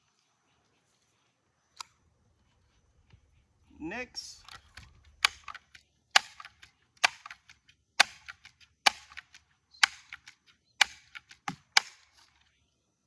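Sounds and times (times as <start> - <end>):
bb pistol shots: 4.4 - 12.3.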